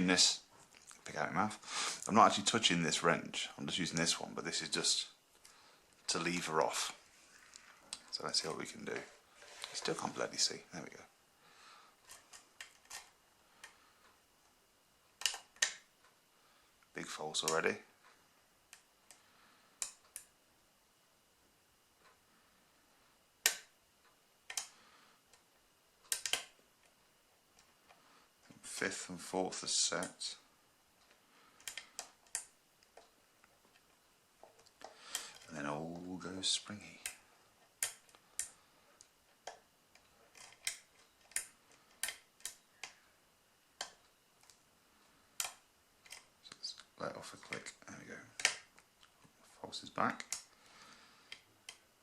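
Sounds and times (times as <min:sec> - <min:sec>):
lock pick metallic clicks: 0:26.1 - 0:26.5.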